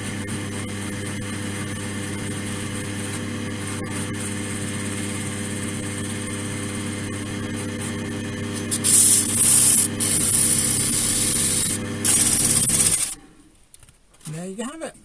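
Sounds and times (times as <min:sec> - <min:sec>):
wood lathe motor humming: 0:00.0 - 0:13.2.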